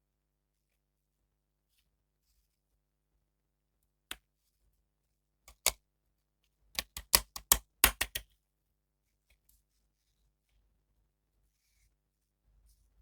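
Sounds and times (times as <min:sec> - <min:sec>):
plastic packaging clicks and taps: 0:05.5 - 0:05.8, 0:06.8 - 0:08.2.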